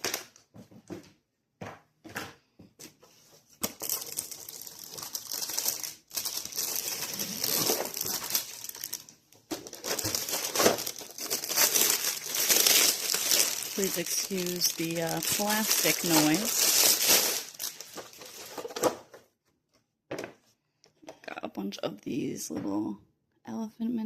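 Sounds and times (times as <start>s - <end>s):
plastic bags crinkling: 3.6s - 19.2s.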